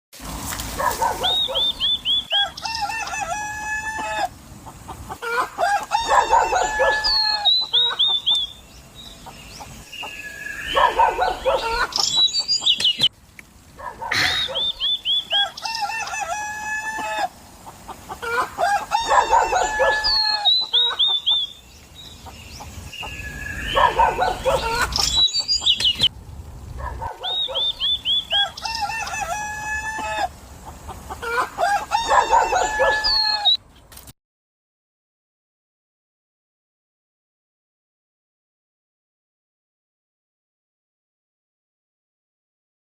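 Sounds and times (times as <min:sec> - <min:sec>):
roosters crowing: 0:00.8 - 0:12.5, 0:13.9 - 0:21.6, 0:22.2 - 0:25.6, 0:26.9 - 0:33.6
chickens clucking: 0:00.9 - 0:13.1, 0:13.9 - 0:26.1, 0:26.9 - 0:33.2.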